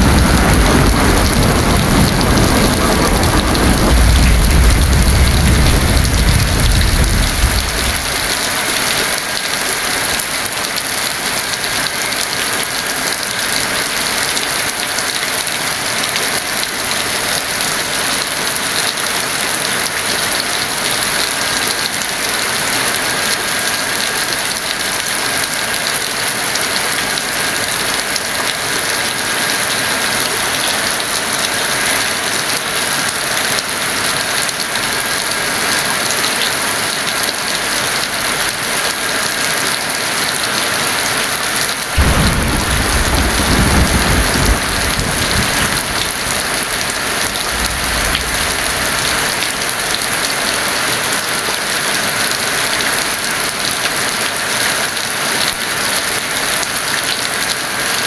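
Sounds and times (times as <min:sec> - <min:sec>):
thunder rumbling: 0:00.0 - 0:08.7, 0:42.0 - 0:50.4
heavy rain: 0:00.0 - 0:58.0.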